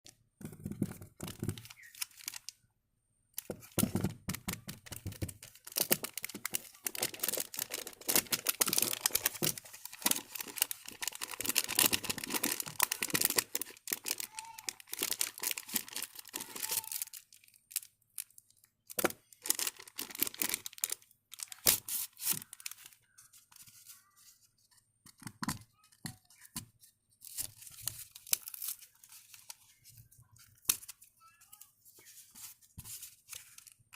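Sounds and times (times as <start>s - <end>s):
packaging tearing and crinkling: 1.2s - 2.5s, 5.3s - 18.3s, 19.4s - 23.0s.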